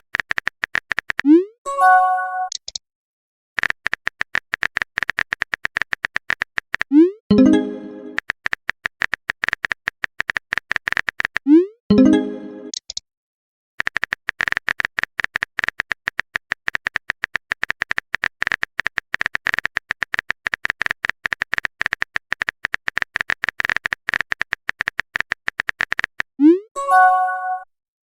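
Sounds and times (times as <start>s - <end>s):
phone keyboard typing clicks: 0.0s - 1.3s, 2.5s - 2.8s, 3.6s - 13.0s, 13.8s - 26.3s.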